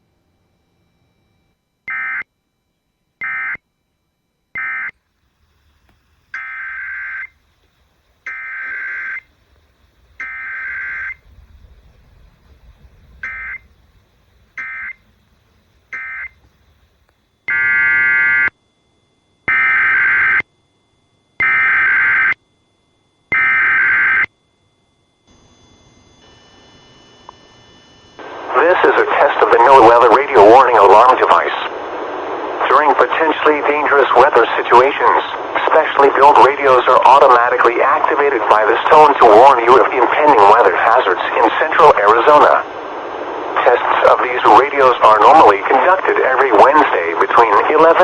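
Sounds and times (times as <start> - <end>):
harsh electronic data bursts: 43.4 - 48.0.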